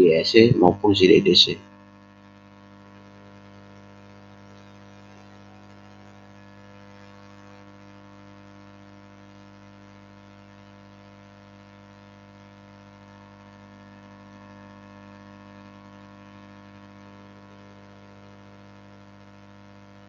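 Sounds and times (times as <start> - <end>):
electrical mains hum: 0.0 - 1.6.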